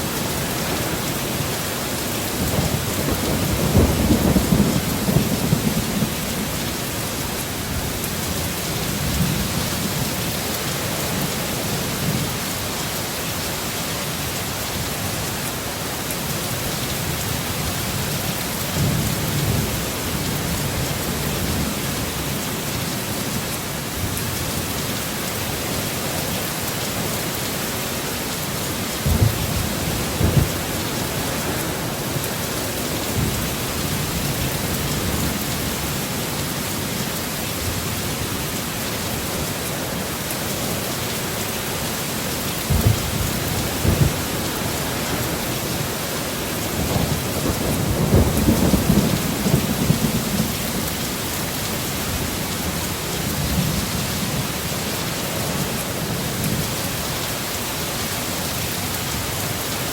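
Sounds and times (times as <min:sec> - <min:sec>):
heavy steady rain: 0:00.0 - 0:59.9
low rumbles of thunder: 0:02.3 - 0:06.8, 0:28.8 - 0:35.9, 0:42.6 - 0:51.1.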